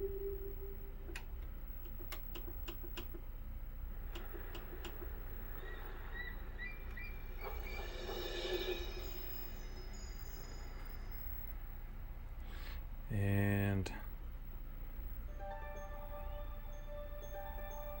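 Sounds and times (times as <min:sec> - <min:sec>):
musical tones from tv speaker: 0:00.0 - 0:01.2, 0:15.2 - 0:18.0
sharp clicks: 0:01.1 - 0:03.2, 0:04.1 - 0:05.2.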